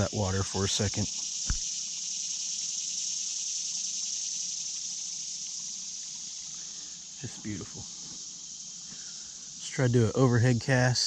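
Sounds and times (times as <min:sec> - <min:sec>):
creek water running: 0:00.0 - 0:01.8.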